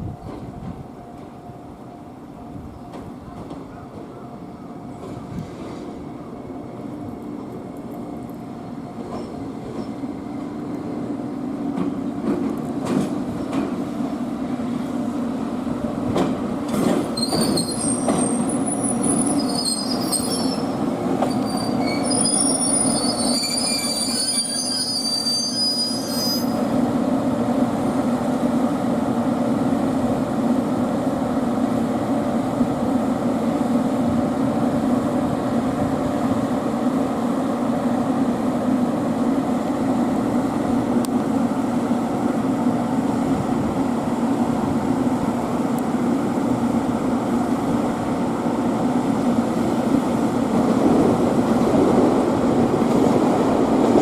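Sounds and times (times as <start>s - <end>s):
wheels squealing: 21.3s - 26.6s.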